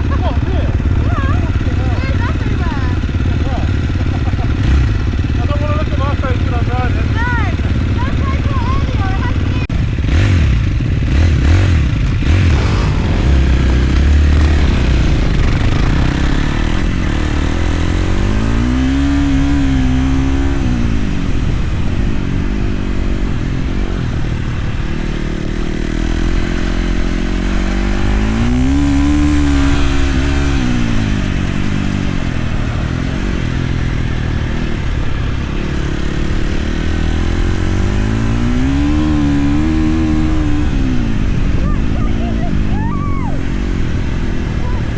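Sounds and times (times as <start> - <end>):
motorcycle engine revving: 0.0 - 44.9
steady low rumble: 10.6 - 44.9.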